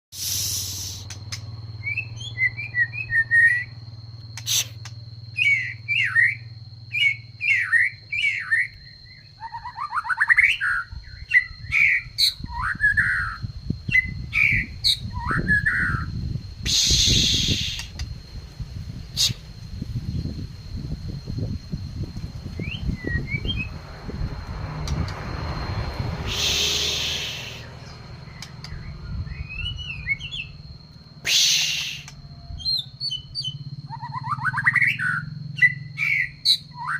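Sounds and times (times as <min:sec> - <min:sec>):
songbird chirping and trilling: 0:00.2 - 0:36.9
steady high whine: 0:13.4 - 0:36.4
loud burst of noise: 0:25.8 - 0:27.8.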